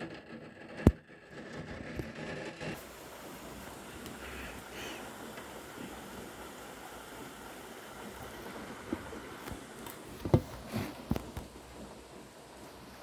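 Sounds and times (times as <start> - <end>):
rain hiss: 2.8 - 13.0.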